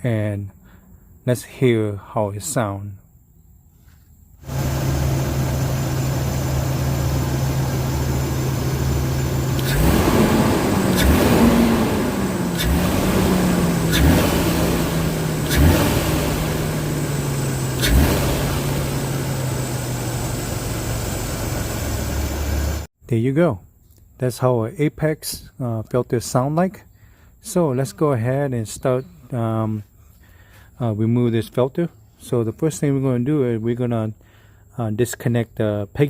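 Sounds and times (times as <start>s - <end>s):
car engine idling and revving: 4.4s - 22.9s
short sharp engine pops: 9.5s - 13.2s.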